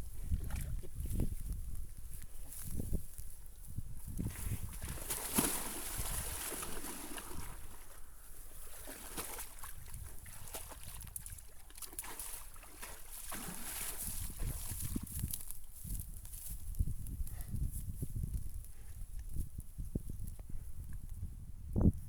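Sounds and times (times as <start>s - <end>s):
water sloshing and splashing: 4.3s - 15.4s.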